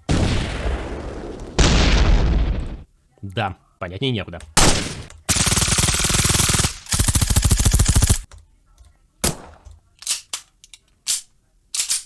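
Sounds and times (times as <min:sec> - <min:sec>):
single gunshots: 0:00.0 - 0:02.9, 0:04.6 - 0:05.1, 0:09.2 - 0:09.7
machine gun fire: 0:04.6 - 0:08.3.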